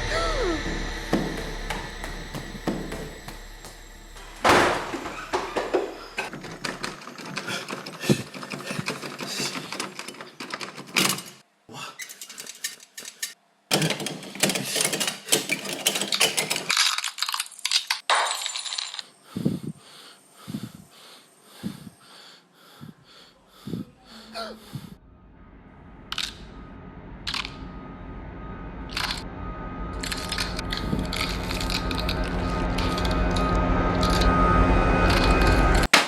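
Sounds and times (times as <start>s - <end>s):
small hard objects clattering: 16.1s - 19.1s.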